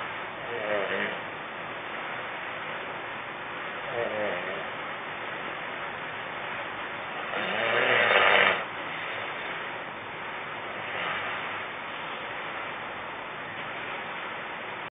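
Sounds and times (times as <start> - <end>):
steady hiss: 0.0 - 14.9
man snoring: 0.4 - 1.2, 3.8 - 4.7, 7.3 - 8.7.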